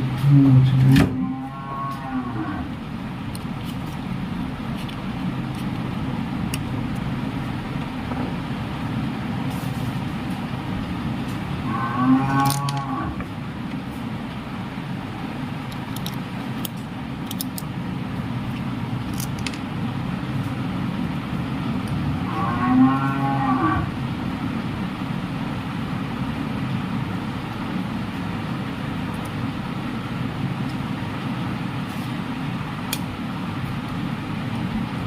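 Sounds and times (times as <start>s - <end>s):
low background rumble: 0.0s - 35.0s
cow mooing: 0.3s - 2.7s, 11.6s - 13.2s, 22.2s - 23.9s.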